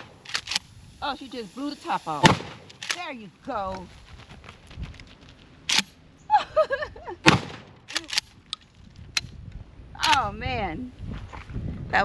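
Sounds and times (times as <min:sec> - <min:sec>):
shotgun shots: 0:02.2 - 0:03.1, 0:07.2 - 0:08.3.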